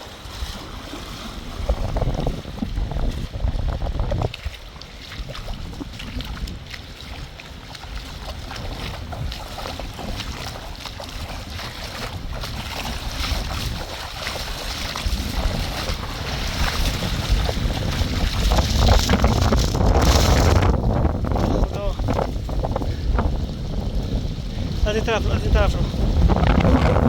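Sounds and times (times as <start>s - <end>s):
water rushing and lapping: 0.0s - 27.0s
wind buffeting microphone: 0.0s - 27.0s
small crackling noises: 17.4s - 23.0s.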